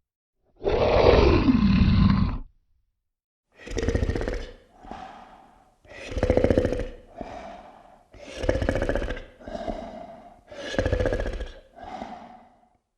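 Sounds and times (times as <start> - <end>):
deep rattling snores: 3.6 - 12.8
droning breaths: 4.6 - 12.9.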